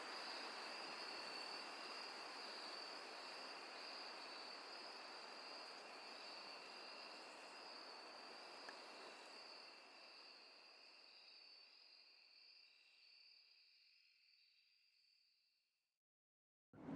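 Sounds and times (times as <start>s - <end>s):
faint hiss: 0.0s - 13.3s
crickets chirring: 0.0s - 15.1s.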